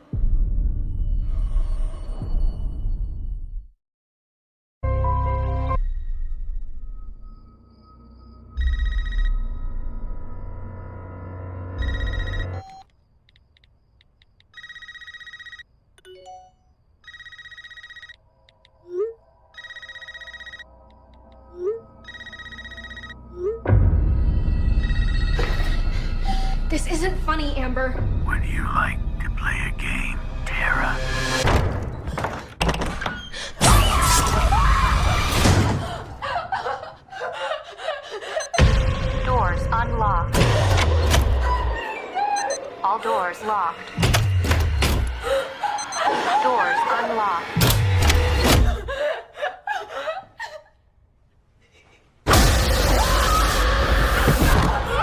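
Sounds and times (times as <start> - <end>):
low rumbling film score: 0.0 - 3.7, 4.9 - 12.8, 18.3 - 32.1, 33.4 - 49.7
tense soundtrack effects: 4.9 - 12.8, 17.9 - 32.3, 38.4 - 48.9
electronic telephone ringer trilling: 14.6 - 15.7, 17.0 - 18.2, 19.5 - 20.8, 21.5 - 23.4.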